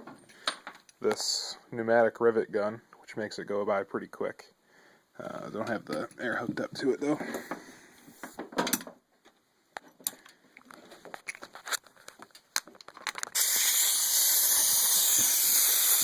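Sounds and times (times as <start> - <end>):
light clicks and handling knocks: 5.5 - 11.5
compressed air hissing: 13.4 - 16.0.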